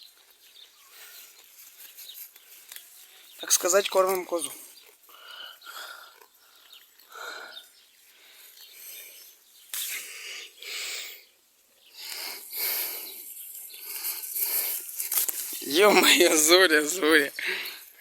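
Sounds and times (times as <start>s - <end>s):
leaves rustling: 0.0s - 5.1s, 12.0s - 18.0s.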